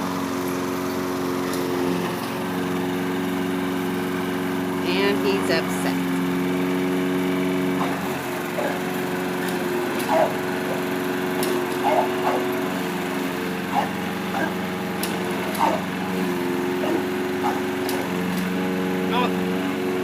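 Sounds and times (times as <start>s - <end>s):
lawnmower engine running: 0.0s - 20.0s
dog barking: 7.8s - 8.8s, 10.1s - 10.4s, 11.8s - 12.5s, 13.7s - 14.6s, 15.6s - 15.9s, 16.8s - 17.7s.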